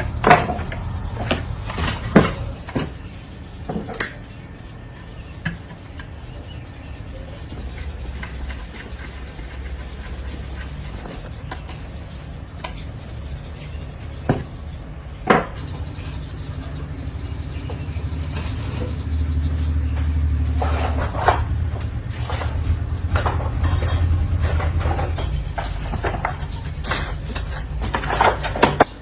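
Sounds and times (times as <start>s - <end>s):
hard objects clinking and knocking: 0.0s - 3.1s, 20.5s - 29.0s
low mechanical hum: 0.0s - 29.0s.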